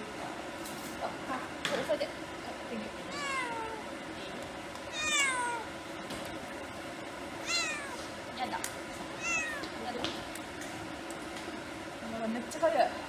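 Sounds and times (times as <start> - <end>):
cat meowing: 3.1 - 3.8, 4.9 - 5.7, 7.4 - 8.1, 9.2 - 9.8.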